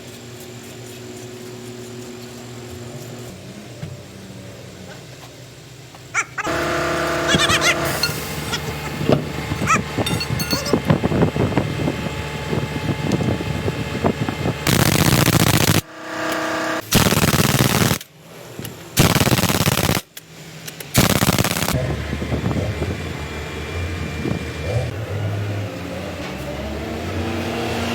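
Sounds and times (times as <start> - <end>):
steady machine running noise: 5.5 - 20.2, 20.8 - 25.0
pneumatic impact wrench rattling: 6.5 - 11.2, 14.7 - 18.1, 19.0 - 21.8.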